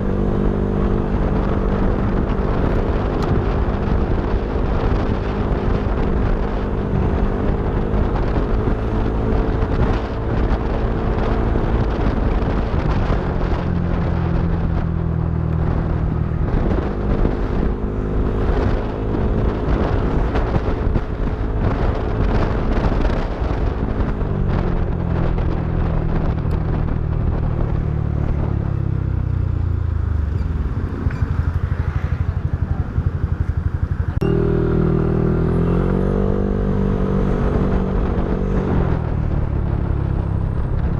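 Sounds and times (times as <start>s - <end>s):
scooter engine running: 27.9s - 40.9s.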